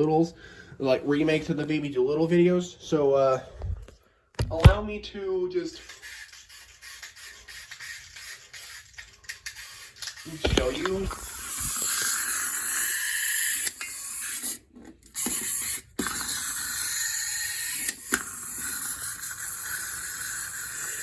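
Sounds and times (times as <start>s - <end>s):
clockwork toy motor whirring: 5.8s - 21.0s
toy clicking: 5.8s - 21.0s.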